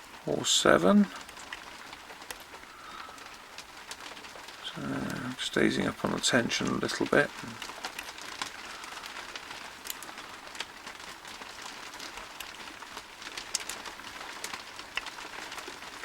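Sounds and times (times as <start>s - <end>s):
heavy rain hissing: 0.0s - 16.0s
small sharp ticks: 1.2s - 5.2s, 7.6s - 16.0s.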